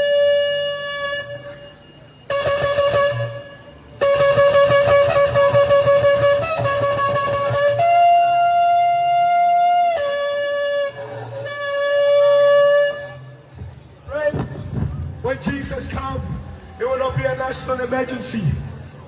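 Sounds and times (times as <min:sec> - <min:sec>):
shofar blasts: 0:00.0 - 0:13.4.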